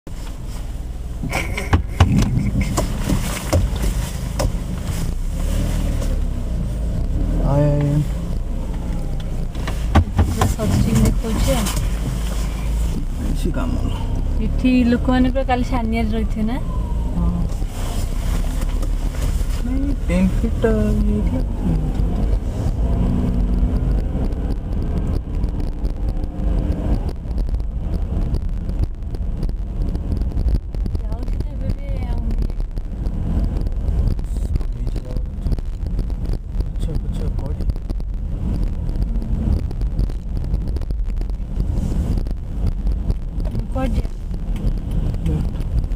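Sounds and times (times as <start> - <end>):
car driving rumble: 0.0 - 45.9
sharp clicks and knocks: 1.2 - 4.8, 7.8 - 12.2, 23.2 - 45.9
wind buffeting microphone: 14.1 - 45.9.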